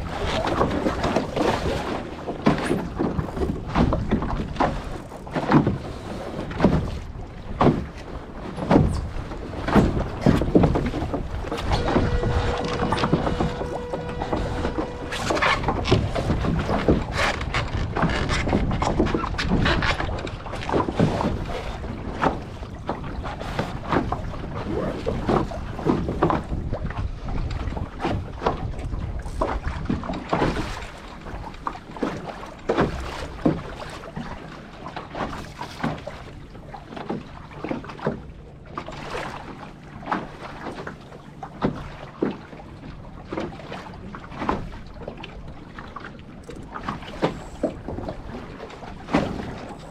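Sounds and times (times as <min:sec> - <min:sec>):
wind on microphone: 0:00.0 - 0:31.5
water slapping boat hull: 0:00.0 - 0:49.9.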